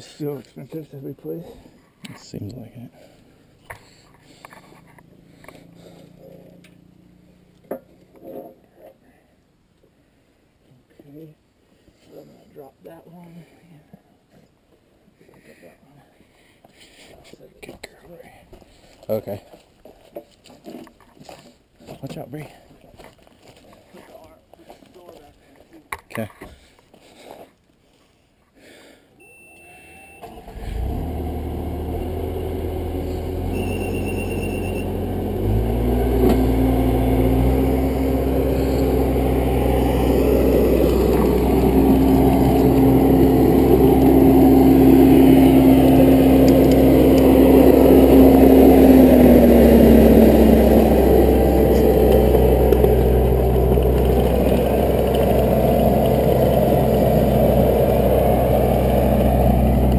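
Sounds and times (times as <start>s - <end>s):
short electronic beep: 29.2s - 30.3s, 33.5s - 34.9s
skid steer engine running: 30.2s - 59.9s.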